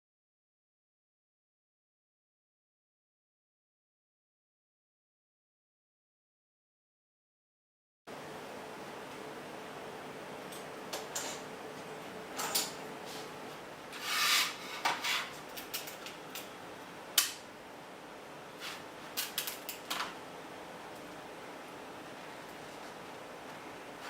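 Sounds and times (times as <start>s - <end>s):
short rubbing scrape: 13.9s - 15.4s.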